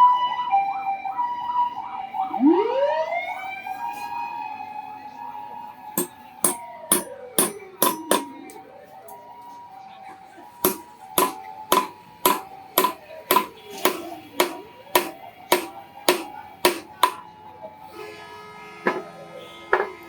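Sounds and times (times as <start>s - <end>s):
hammer striking iron on anvil: 6.0s - 8.6s, 10.6s - 17.2s.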